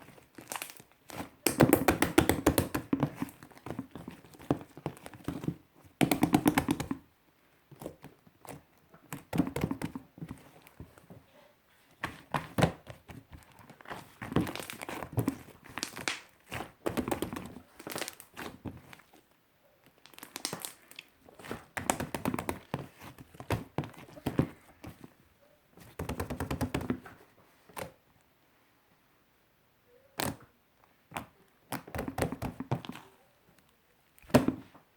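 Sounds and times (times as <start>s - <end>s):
hands squishing slime: 0.0s - 7.0s, 11.8s - 19.2s, 19.9s - 25.2s
crackling popping clicks of slime: 15.7s - 16.4s, 20.0s - 21.1s.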